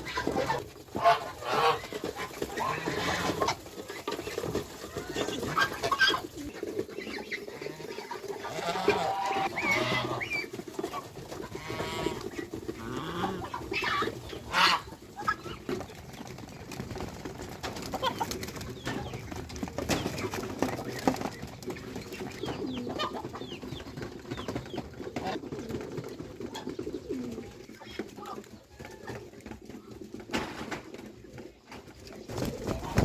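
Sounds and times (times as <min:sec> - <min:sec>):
geese calling: 0:00.0 - 0:03.7, 0:07.1 - 0:15.7.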